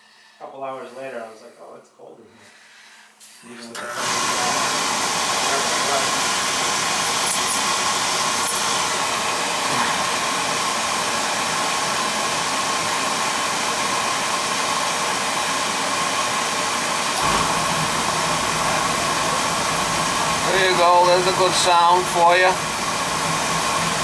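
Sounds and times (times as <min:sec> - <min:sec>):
oil burner motor and blower: 0:03.8 - 0:24.0
burner igniting low rumble: 0:03.9 - 0:24.0.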